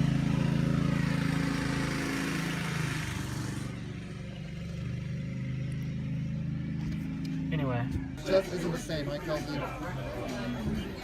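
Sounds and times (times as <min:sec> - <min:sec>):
go-kart engine running: 0:00.0 - 0:08.2.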